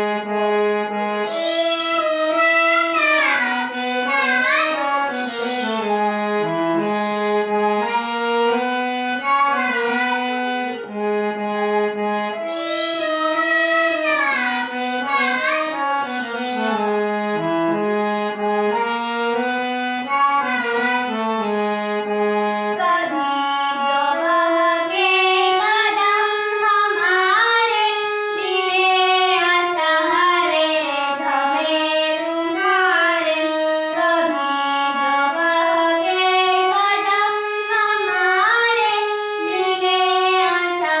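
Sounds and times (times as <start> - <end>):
girl singing prayer song: 1.3 - 5.4, 9.2 - 10.8, 12.5 - 16.3, 20.3 - 21.2, 22.8 - 41.0.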